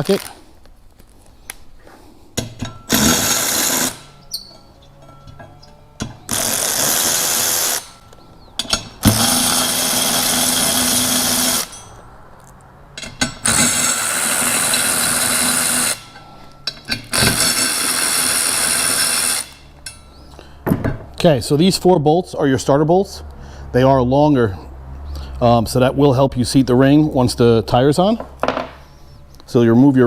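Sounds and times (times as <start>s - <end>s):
power tool spinning out bolts: 2.8s - 4.2s, 6.3s - 8.0s, 9.0s - 11.9s, 13.1s - 16.3s, 17.0s - 19.7s.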